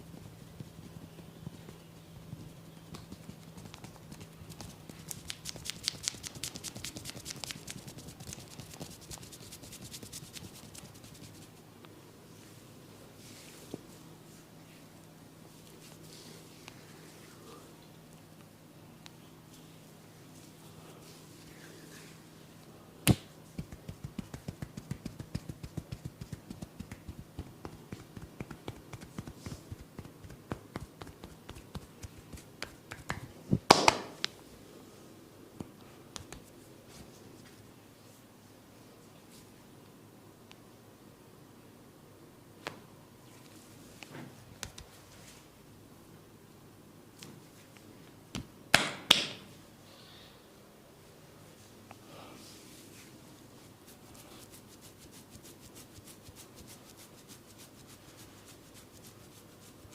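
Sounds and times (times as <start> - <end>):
hands tapping on head: 0.2 - 9.3, 23.1 - 34.2
sharp snap: 23.0 - 23.3.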